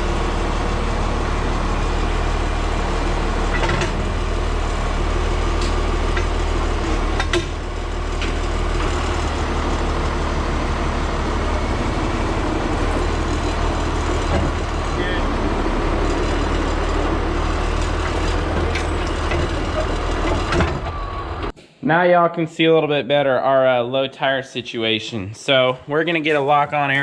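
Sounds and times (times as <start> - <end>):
vehicle engine running: 0.0 - 21.5.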